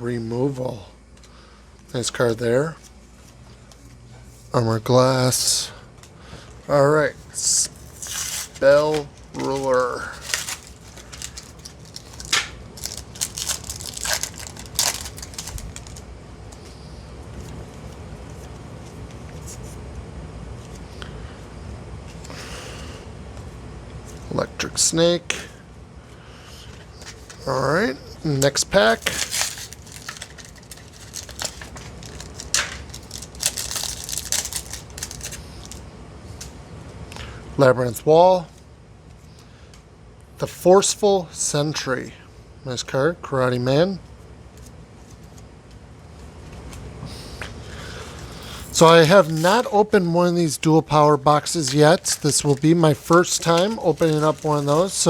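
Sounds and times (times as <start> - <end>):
foil wrapper tearing and crinkling: 7.8 - 16.0, 28.8 - 35.8, 48.2 - 49.7, 51.3 - 55.0.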